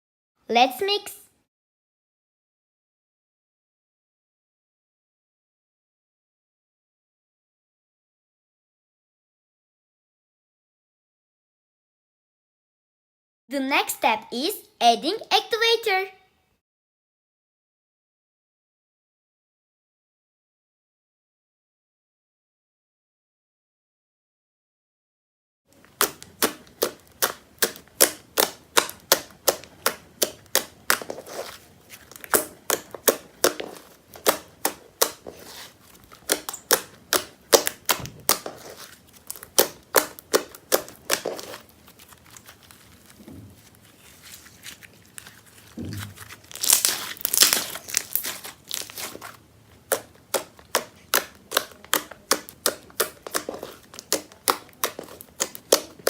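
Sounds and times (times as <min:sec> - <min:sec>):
slime sticky clicks and pops: 0:46.5 - 0:49.1.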